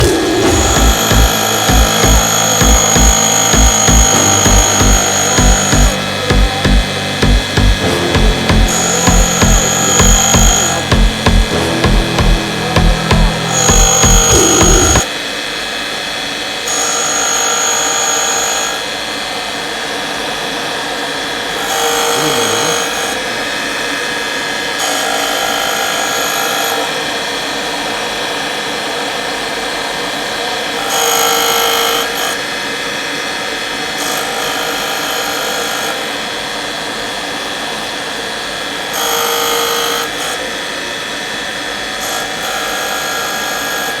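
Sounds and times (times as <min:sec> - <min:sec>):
grinding: 0:00.0 - 0:15.0
surface grinder humming: 0:00.0 - 0:15.1, 0:21.6 - 0:23.7.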